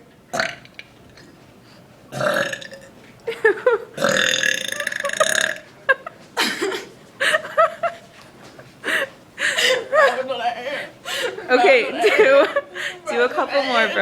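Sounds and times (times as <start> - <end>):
woman burping: 0.4 - 0.6, 2.2 - 2.9, 4.0 - 5.7.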